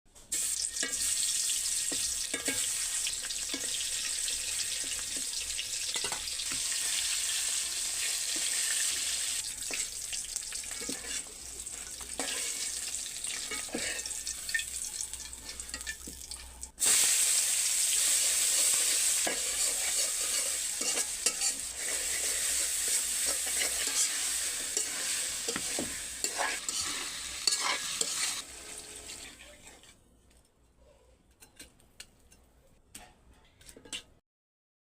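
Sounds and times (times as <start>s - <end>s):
food sizzling in a pan: 0.3s - 29.9s
utensil scraping a pan: 10.6s - 14.6s, 18.0s - 30.0s.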